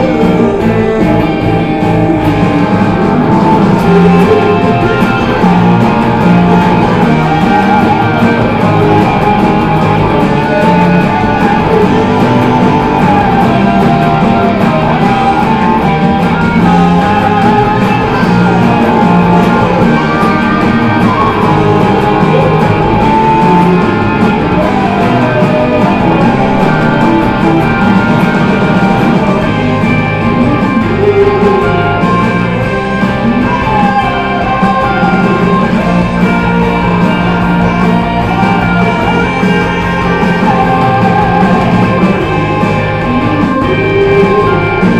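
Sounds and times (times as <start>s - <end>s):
guitar-led rock band music: 0.0s - 44.9s.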